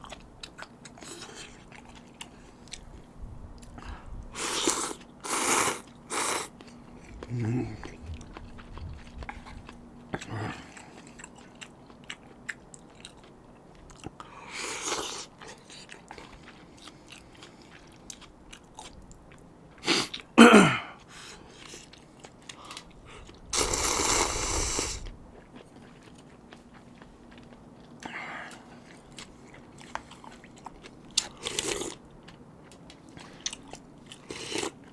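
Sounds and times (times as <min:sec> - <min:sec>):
soft chewing and mouth clicks: 0:00.0 - 0:34.9
noodle slurping: 0:04.4 - 0:06.5, 0:23.5 - 0:25.1.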